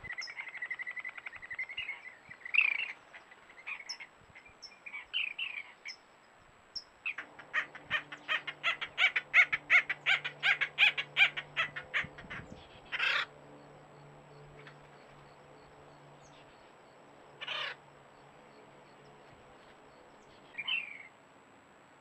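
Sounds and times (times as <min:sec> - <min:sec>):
harsh bird calls: 0:07.0 - 0:13.6, 0:17.3 - 0:17.9
higher wavering bird call: 0:07.1 - 0:13.4.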